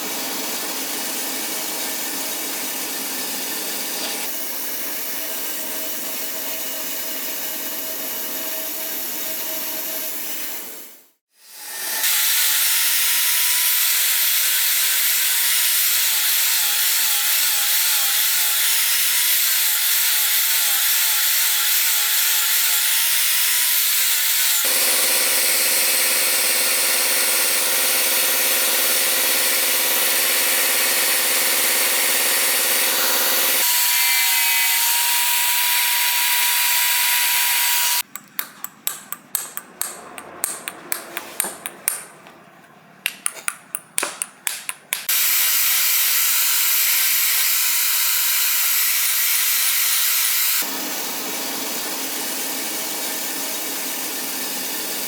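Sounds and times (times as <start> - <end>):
power tool running: 11.4 - 38.1
sharp taps on hard material: 38.0 - 42.4, 43.0 - 45.1.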